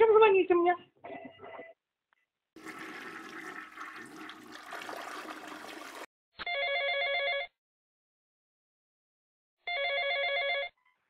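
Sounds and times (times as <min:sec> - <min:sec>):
telephone ringtone: 0:06.4 - 0:07.5, 0:09.7 - 0:10.8.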